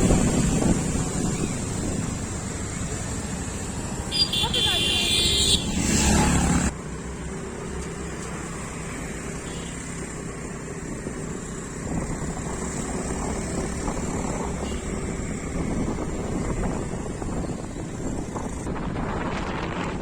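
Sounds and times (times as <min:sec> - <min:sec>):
wind buffeting microphone: 0:00.0 - 0:03.9, 0:10.8 - 0:20.0.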